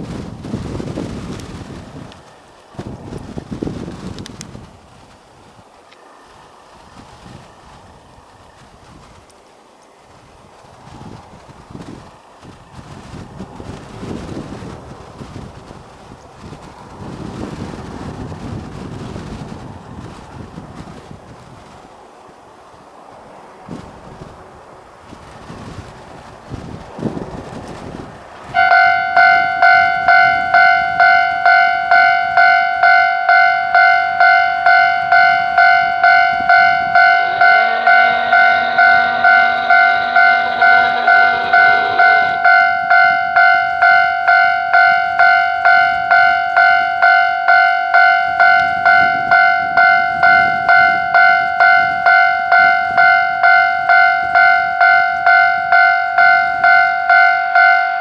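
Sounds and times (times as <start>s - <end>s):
locomotive horn: 28.5s - 58.0s
level-crossing alarm bell ringing: 28.6s - 58.0s.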